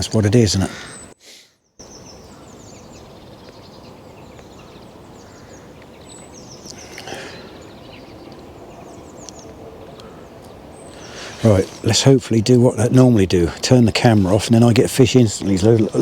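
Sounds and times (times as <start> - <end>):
small birds chirping: 0.0 - 16.0
wind hiss: 1.8 - 12.2.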